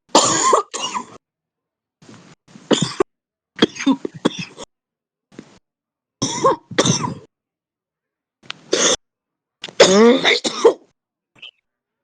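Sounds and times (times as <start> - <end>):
harsh coughing: 0.1 - 1.2, 2.7 - 4.7, 6.2 - 7.3, 8.7 - 9.0, 9.7 - 10.9.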